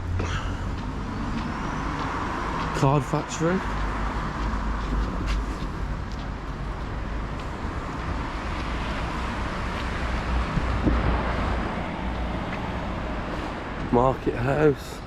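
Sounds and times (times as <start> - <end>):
general street noise: 0.0 - 15.0
wind rumble on microphone: 3.8 - 14.0.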